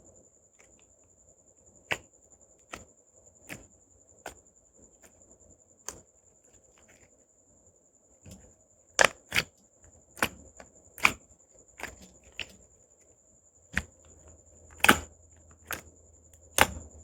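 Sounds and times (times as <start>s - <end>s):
slime being pressed: 9.0s - 9.5s, 11.0s - 11.2s, 11.8s - 12.5s, 14.8s - 15.8s, 16.5s - 16.9s.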